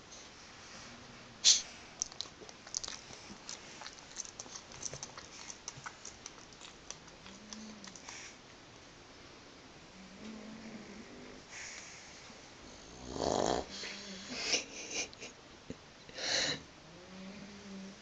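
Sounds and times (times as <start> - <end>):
dog snoring faintly: 0.7 - 8.4, 9.9 - 12.1, 12.7 - 14.4
dog clicks and smacks: 2.0 - 8.2.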